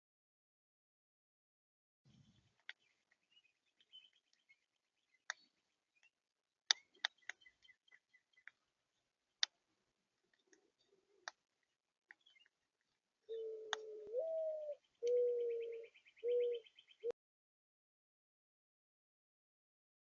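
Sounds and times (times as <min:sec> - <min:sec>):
mourning dove cooing: 0:13.3 - 0:17.2.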